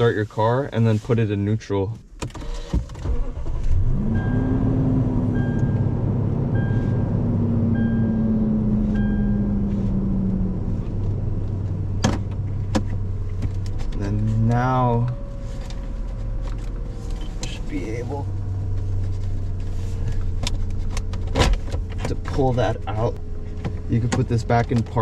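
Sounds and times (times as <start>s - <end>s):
car engine starting and idling: 1.2s - 25.0s
faint chime beeping: 7.8s - 8.3s, 9.0s - 9.6s.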